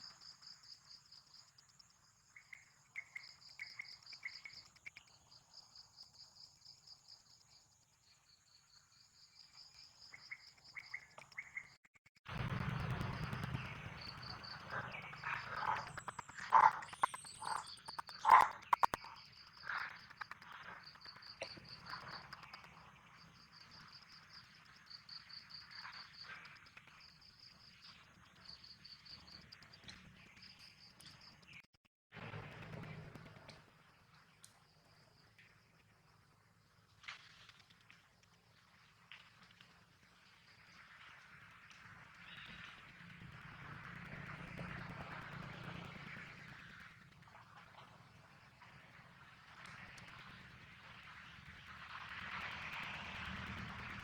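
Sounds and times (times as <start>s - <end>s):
insects chirping: 13.2s - 27.6s.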